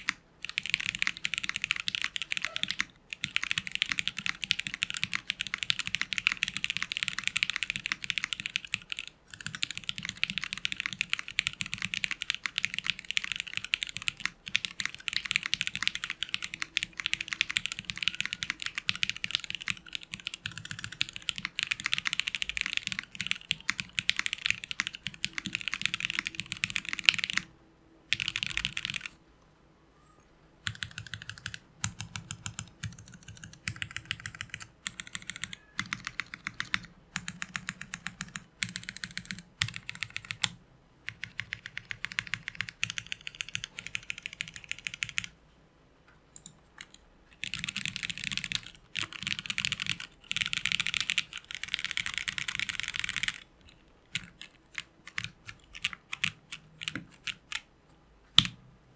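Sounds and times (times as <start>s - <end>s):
fast typing on mechanical keyboard: 0.0s - 27.5s, 28.1s - 29.2s, 30.6s - 45.4s, 46.4s - 53.5s, 54.1s - 57.7s.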